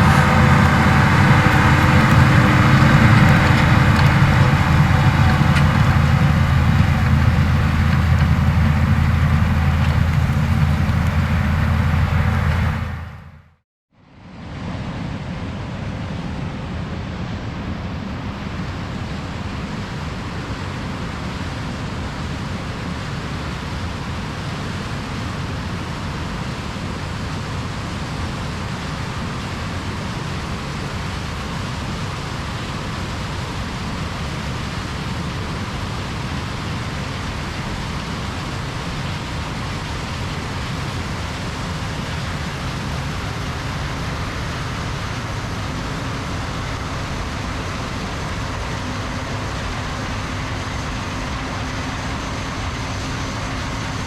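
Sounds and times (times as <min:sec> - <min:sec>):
diesel machinery droning: 0:00.0 - 0:13.6, 0:36.7 - 0:54.0.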